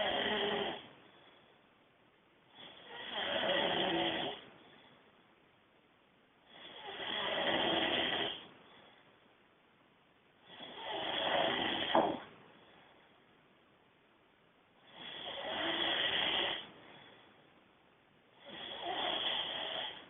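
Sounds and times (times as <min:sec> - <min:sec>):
man snoring: 0:00.0 - 0:00.8, 0:02.6 - 0:04.4, 0:06.5 - 0:08.5, 0:10.5 - 0:12.2, 0:14.9 - 0:16.7, 0:18.4 - 0:20.0.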